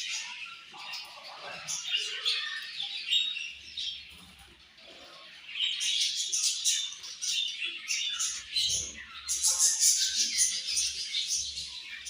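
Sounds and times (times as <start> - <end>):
budgerigars chirping and chattering: 0.0 - 12.0.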